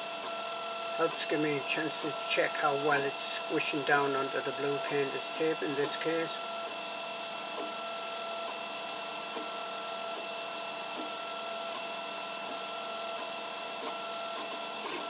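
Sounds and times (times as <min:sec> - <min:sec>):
stepper motors whining: 0:00.9 - 0:06.7.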